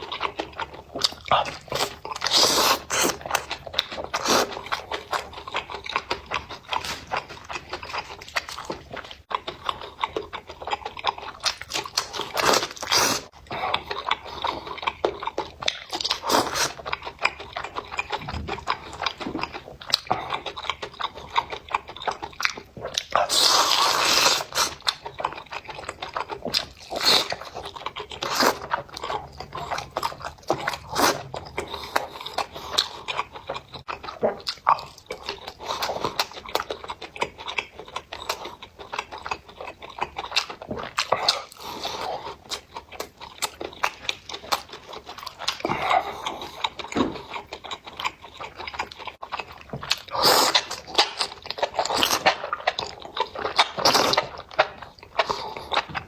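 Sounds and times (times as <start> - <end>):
crunchy chewing: 0.0 - 56.0.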